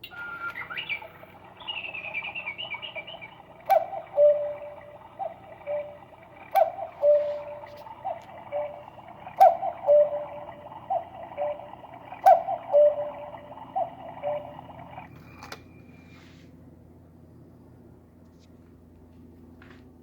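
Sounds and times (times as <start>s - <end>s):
cuckoo clock call: 0.0s - 15.8s.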